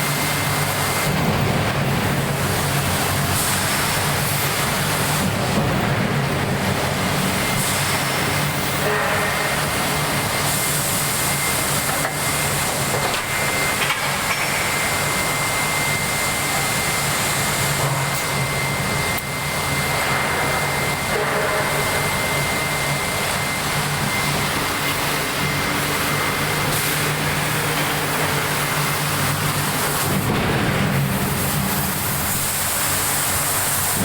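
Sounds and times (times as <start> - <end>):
high-pitched machine whine: 0.0 - 34.0
machinery rush: 7.1 - 34.0.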